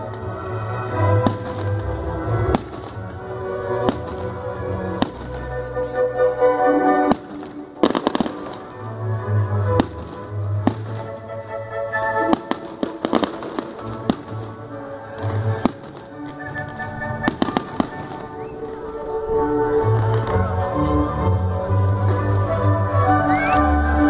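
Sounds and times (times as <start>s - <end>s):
fireworks exploding: 1.0s - 5.5s, 7.1s - 8.8s, 9.7s - 11.2s, 12.2s - 21.2s.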